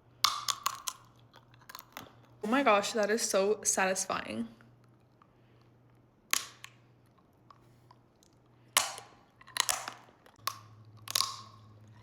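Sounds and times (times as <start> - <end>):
quiet chewing: 4.6 - 6.1, 6.9 - 12.0.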